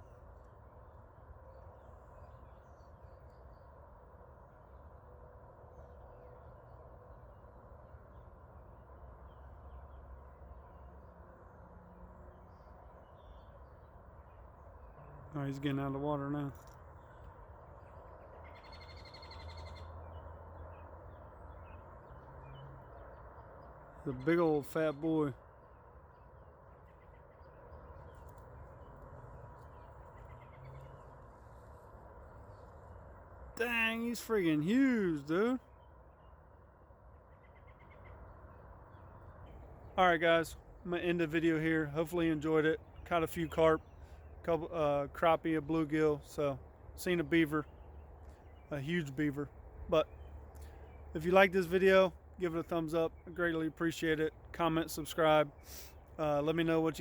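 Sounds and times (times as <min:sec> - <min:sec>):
low steady hiss: 0:00.0 - 0:57.0
faint bird chirps: 0:12.2 - 0:33.0.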